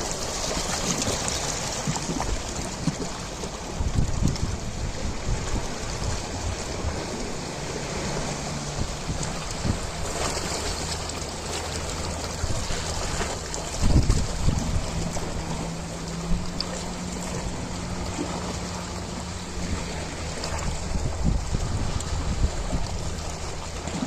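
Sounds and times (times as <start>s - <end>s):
ocean waves washing in: 0.0s - 24.0s.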